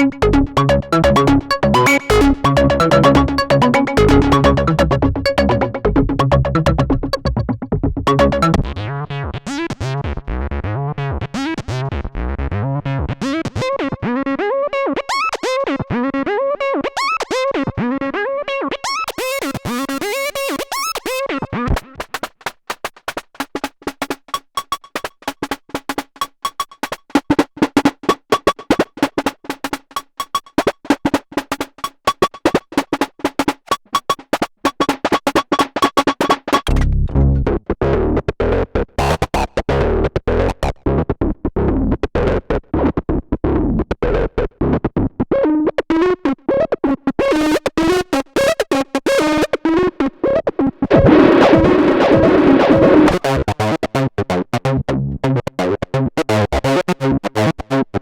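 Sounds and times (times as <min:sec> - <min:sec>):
low beat: 0:00.0 - 0:08.8
synthesizer playing sequenced pattern: 0:00.0 - 0:08.8.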